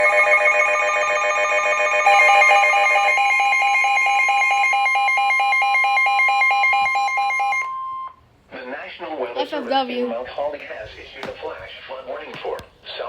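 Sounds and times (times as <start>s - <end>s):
electronic alarm tones pulsing: 0.0s - 8.2s.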